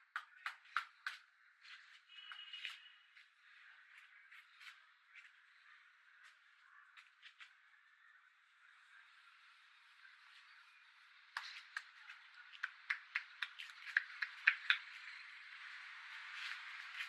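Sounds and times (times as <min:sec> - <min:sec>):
hands slapping head: 0:00.1 - 0:01.3, 0:11.4 - 0:14.9.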